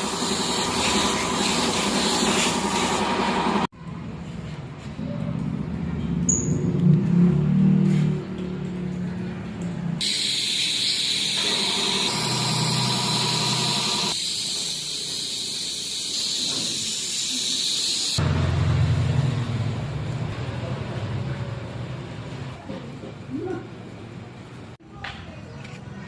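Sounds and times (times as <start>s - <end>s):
spray paint hissing: 0.0s - 3.2s, 10.0s - 18.2s.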